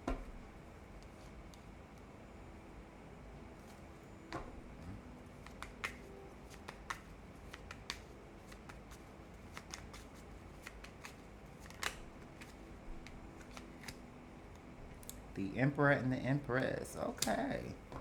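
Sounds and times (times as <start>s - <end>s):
cards being shuffled: 3.6s - 14.1s, 17.0s - 17.7s.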